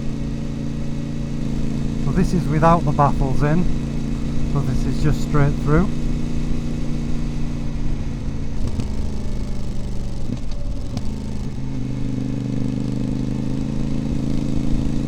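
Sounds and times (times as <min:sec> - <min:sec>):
motorcycle engine cruising: 0:00.0 - 0:15.0.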